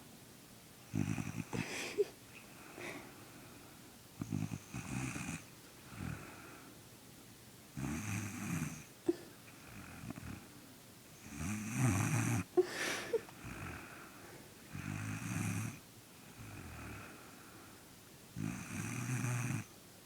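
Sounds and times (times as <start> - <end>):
boy snoring: 0.9 - 2.0, 11.3 - 13.9
soft breaths: 1.1 - 6.9, 9.0 - 11.3, 12.5 - 15.2, 16.1 - 18.0.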